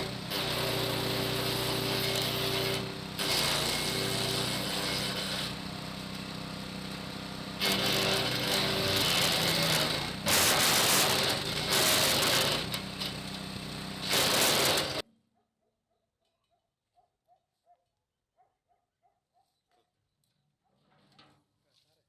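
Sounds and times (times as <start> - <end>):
garden shredder motor hum: 0.0 - 15.0.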